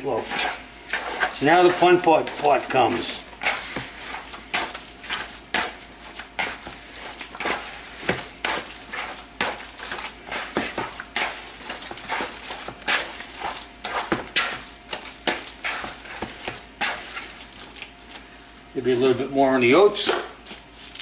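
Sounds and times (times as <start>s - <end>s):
meat mixture squelching by hand: 0.0s - 18.4s, 19.0s - 21.0s.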